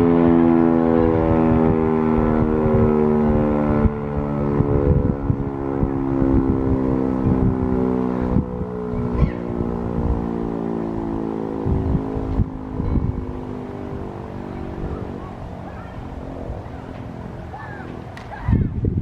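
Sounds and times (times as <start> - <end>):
warning siren steady tone: 0.0 - 19.0
low thumps: 1.3 - 19.0.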